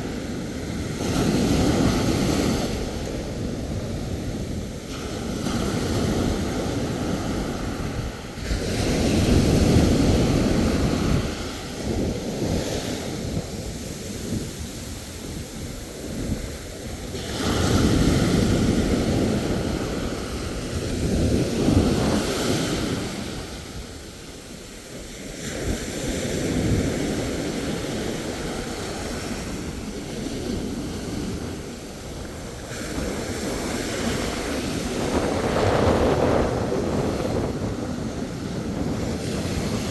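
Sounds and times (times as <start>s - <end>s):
ocean surf washing ashore: 0.0s - 39.9s
wind buffeting microphone: 0.0s - 39.9s.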